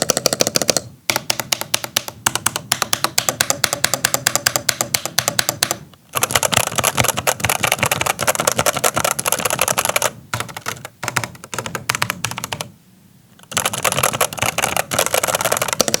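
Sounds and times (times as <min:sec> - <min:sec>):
mechanical keyboard typing: 0:00.0 - 0:12.7, 0:13.4 - 0:16.0.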